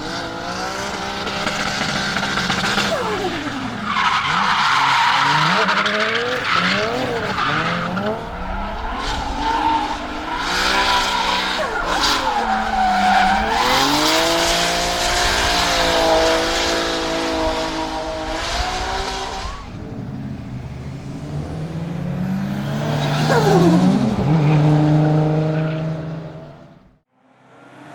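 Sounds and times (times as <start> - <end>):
tyres squealing and skidding: 0.0 - 26.9
car engine revving hard: 0.0 - 27.0.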